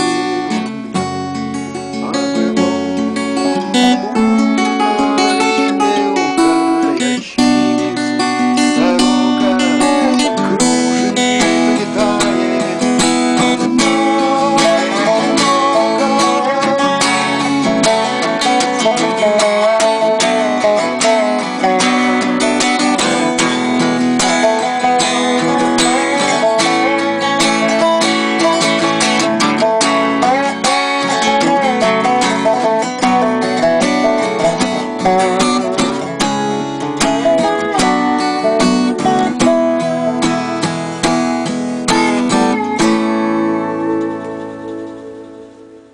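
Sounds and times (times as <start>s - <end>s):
acoustic guitar fingerpicking: 0.0s - 45.9s
resonator slide guitar: 0.0s - 45.9s.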